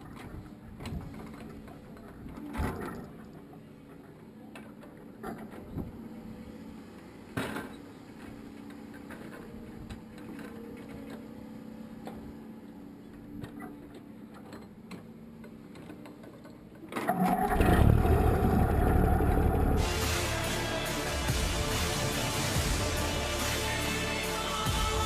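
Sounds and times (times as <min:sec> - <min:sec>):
machine humming: 0:17.4 - 0:25.0
loud full sound: 0:17.5 - 0:25.0.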